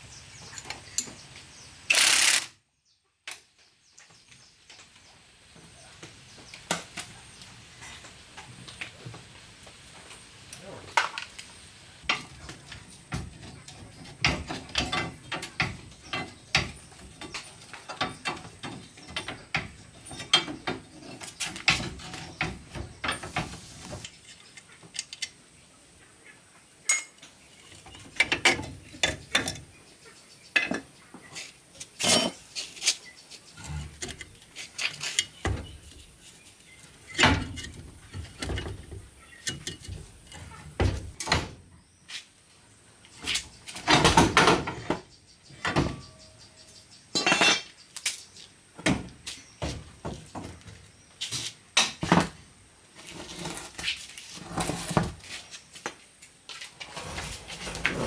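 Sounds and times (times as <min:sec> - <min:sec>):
hand tools clicking and clanking: 0:00.4 - 0:01.3, 0:01.9 - 0:02.5, 0:11.0 - 0:25.4, 0:26.8 - 0:29.8, 0:30.6 - 0:41.4, 0:47.1 - 0:48.2.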